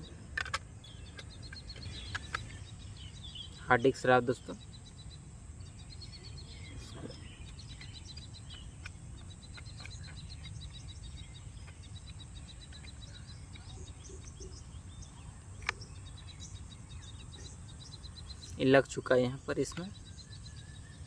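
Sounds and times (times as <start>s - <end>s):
high background chirps: 0.0s - 21.0s
low steady hum: 0.0s - 21.0s
hard drive handling clicks: 0.2s - 3.4s, 15.5s - 16.0s.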